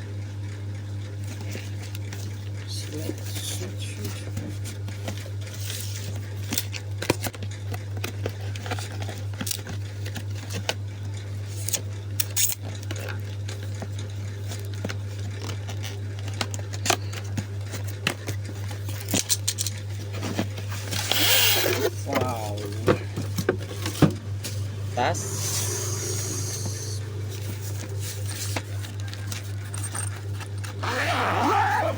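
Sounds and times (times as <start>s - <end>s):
steady low hum: 20.5s - 31.9s.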